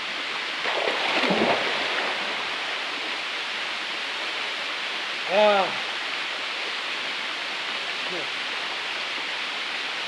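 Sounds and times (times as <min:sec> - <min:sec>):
waterfall rushing: 0:00.5 - 0:10.0.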